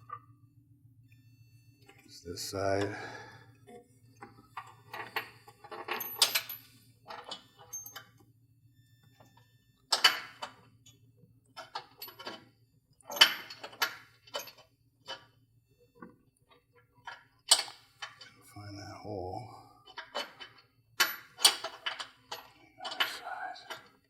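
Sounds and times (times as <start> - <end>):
bolt clinking and scraping on metal: 19.9 - 23.9.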